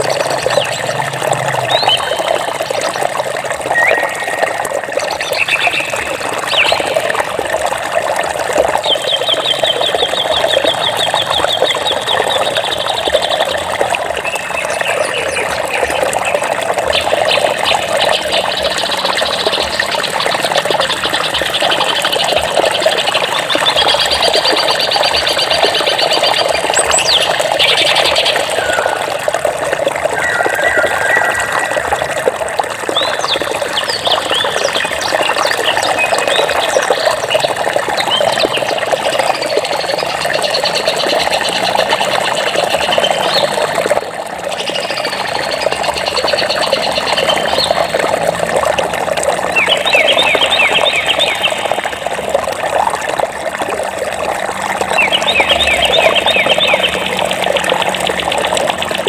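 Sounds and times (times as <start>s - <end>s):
flowing water: 0.0s - 59.0s
birds trilling and chirping: 1.6s - 7.2s, 14.3s - 43.7s, 54.9s - 59.0s.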